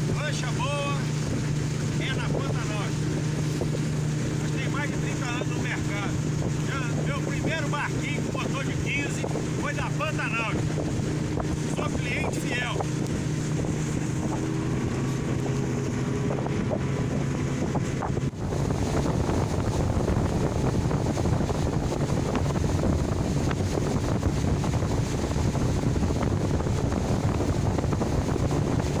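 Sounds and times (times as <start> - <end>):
motorboat engine running: 0.0 - 29.0
rushing water: 0.0 - 29.0
wind buffeting microphone: 0.0 - 29.0.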